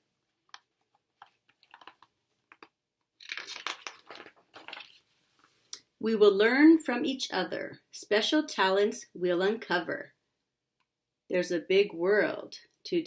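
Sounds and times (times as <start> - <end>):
paper page rustling: 0.9 - 5.7.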